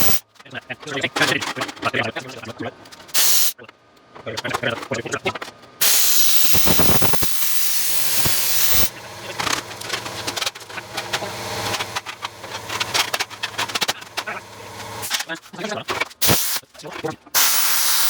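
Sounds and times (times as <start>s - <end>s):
plasma cutter hissing: 0.0s - 0.2s, 3.2s - 3.5s, 5.8s - 9.9s, 16.2s - 16.6s, 17.4s - 18.0s.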